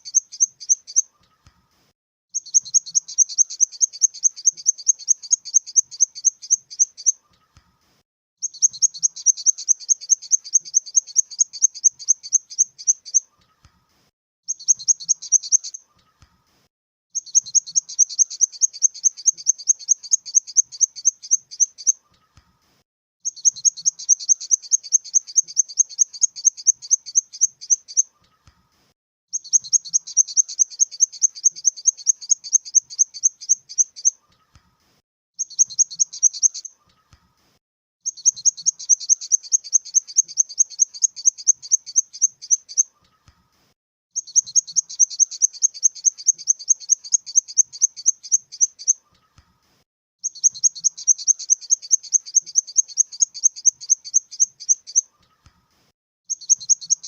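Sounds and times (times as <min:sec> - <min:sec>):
grasshopper chirping: 0:02.4 - 0:07.1, 0:08.4 - 0:13.2, 0:17.2 - 0:21.9, 0:23.3 - 0:28.0, 0:29.4 - 0:34.1, 0:38.1 - 0:42.8, 0:44.2 - 0:48.9, 0:50.2 - 0:55.0.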